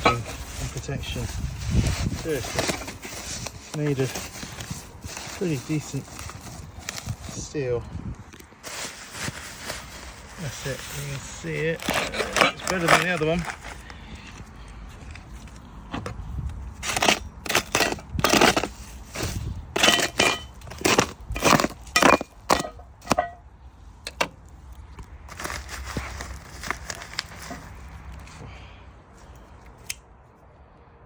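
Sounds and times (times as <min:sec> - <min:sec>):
packaging tearing and rustling: 0:00.0 - 0:07.4, 0:08.2 - 0:14.5, 0:25.2 - 0:28.4.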